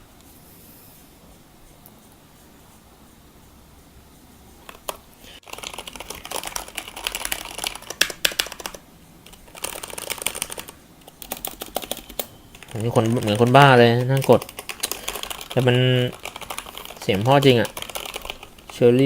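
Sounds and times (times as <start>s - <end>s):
mechanical keyboard typing: 4.6s - 19.0s.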